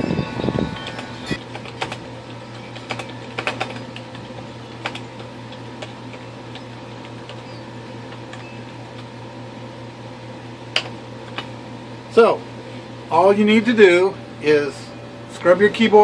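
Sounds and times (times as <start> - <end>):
steady low hum: 0.0 - 16.0
keyboard keys clicking: 0.8 - 7.5.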